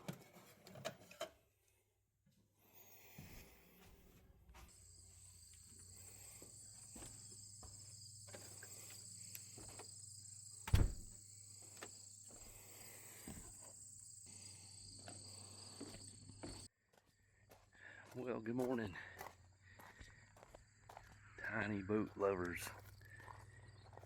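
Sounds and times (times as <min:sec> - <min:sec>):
insects trilling: 0:04.7 - 0:16.7, 0:19.4 - 0:24.0
sharp thump: 0:10.7 - 0:11.1.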